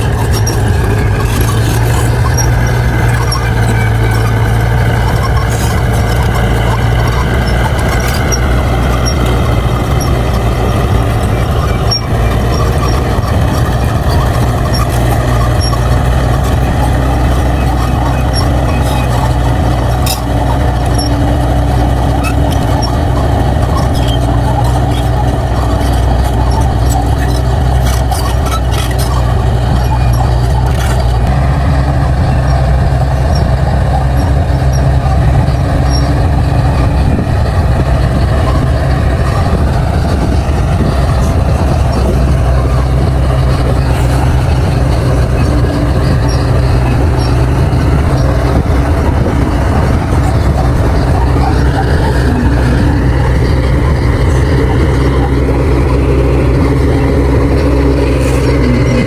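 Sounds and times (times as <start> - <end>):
scattered clicks: 0.0 - 31.4
bulldozer diesel engine running: 0.0 - 59.0.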